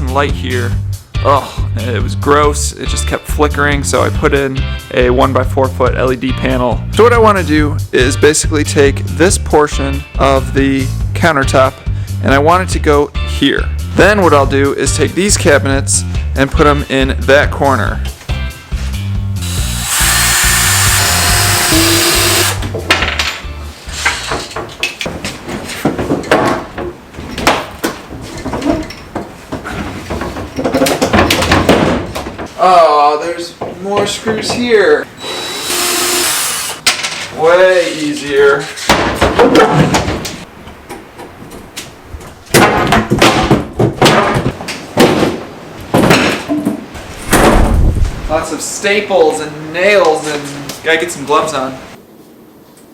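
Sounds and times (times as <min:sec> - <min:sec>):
background music with bass: 0:00.0 - 0:24.4
power drill running: 0:19.4 - 0:22.6, 0:35.2 - 0:36.8
wooden parts knocking: 0:25.8 - 0:32.6, 0:42.5 - 0:46.8.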